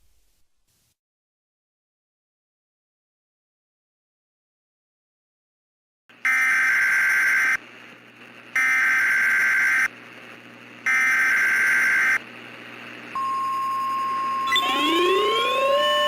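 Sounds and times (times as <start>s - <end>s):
steady alarm tone: 8.6s - 9.9s, 10.9s - 12.2s, 13.2s - 16.0s
rising siren-like tone: 14.1s - 16.0s
buzzy screeching data bursts: 14.3s - 16.0s.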